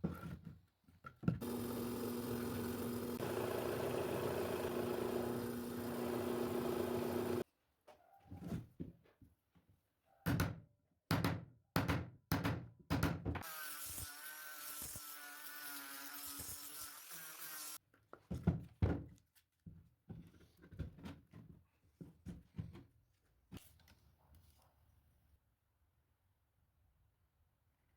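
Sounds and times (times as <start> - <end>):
small power tool motor whine: 1.4 - 7.4.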